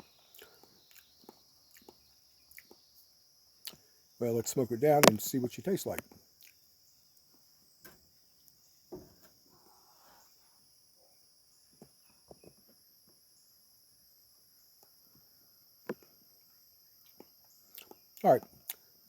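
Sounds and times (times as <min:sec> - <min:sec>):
high-pitched insect chorus: 0:00.0 - 0:19.0
faint soft knocks: 0:08.9 - 0:09.4.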